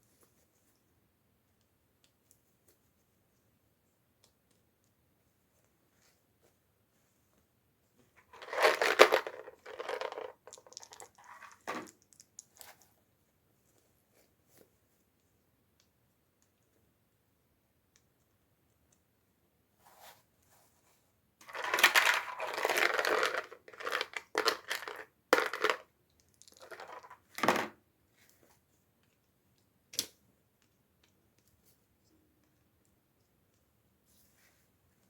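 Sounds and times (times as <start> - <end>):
packaging tearing and crinkling: 8.3 - 10.8.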